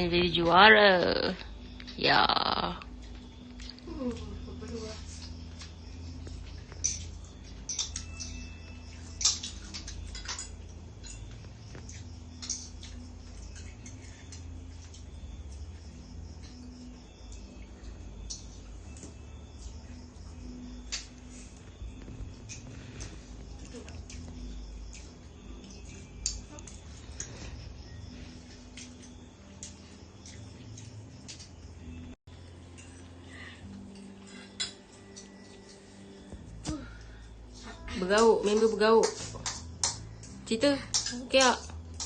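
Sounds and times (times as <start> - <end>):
faint eating noises: 0.0 - 42.0
utensils clicking and tapping: 5.0 - 15.7, 38.0 - 42.0.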